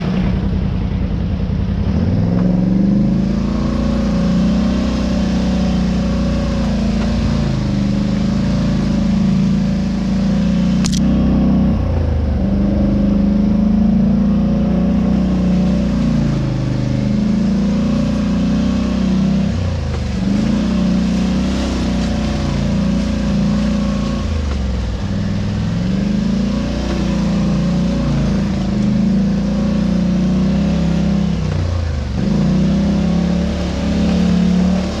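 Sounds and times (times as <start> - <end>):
engine revving: 0.0 - 35.0
sharp click: 10.8 - 11.1.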